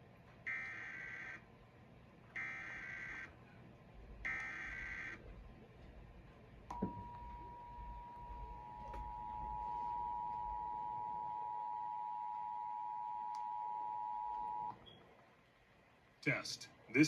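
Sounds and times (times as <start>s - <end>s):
two-tone attention signal: 6.7s - 14.7s.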